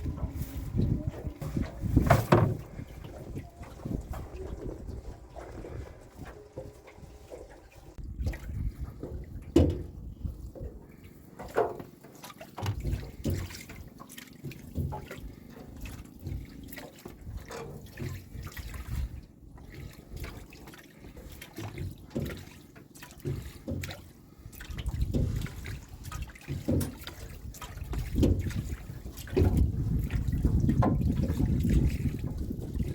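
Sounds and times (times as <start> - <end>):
low knocks: 0.0 - 5.7
water splashing and trickling: 0.0 - 32.9.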